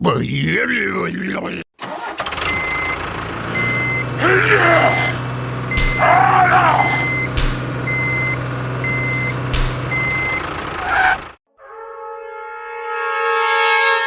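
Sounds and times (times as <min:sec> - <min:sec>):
diesel engine hum: 0:01.9 - 0:11.4
truck reversing alarm beeping: 0:02.4 - 0:11.4
sharp clicks: 0:07.0 - 0:10.5.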